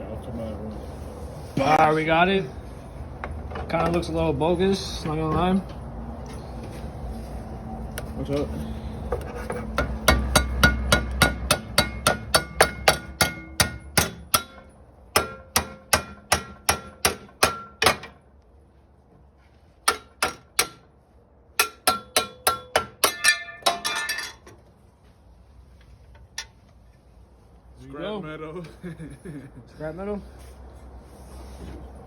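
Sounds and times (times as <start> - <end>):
hammer striking metal with ringing: 9.8 - 18.2, 21.6 - 24.3.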